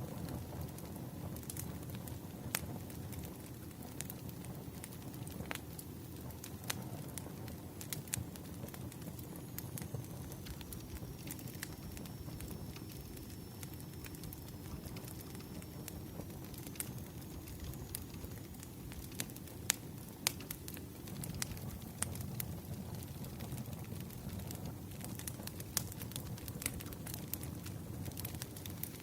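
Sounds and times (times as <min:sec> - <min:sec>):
wood fire crackling: 0:00.0 - 0:29.0
low steady rumble: 0:06.2 - 0:29.0.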